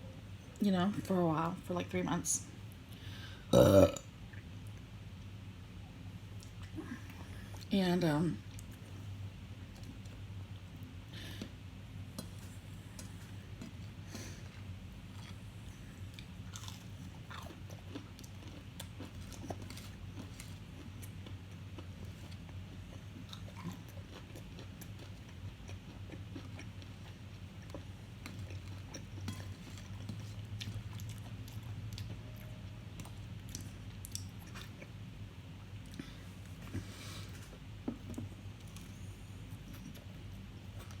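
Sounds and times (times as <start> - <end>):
low steady hum: 0.0 - 41.0
person chewing food: 12.1 - 35.0.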